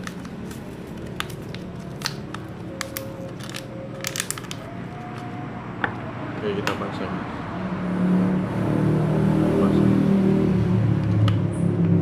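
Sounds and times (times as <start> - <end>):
batteries and packaging clicking: 0.0 - 5.4.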